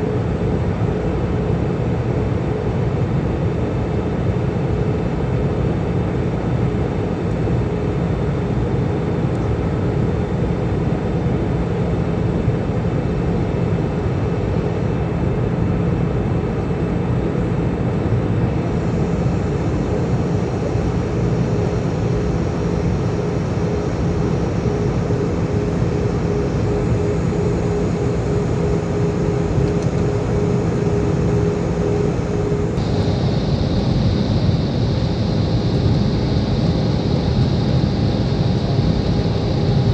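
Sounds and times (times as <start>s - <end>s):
jet engines droning: 0.0s - 39.9s
thin steady hum: 18.5s - 39.9s.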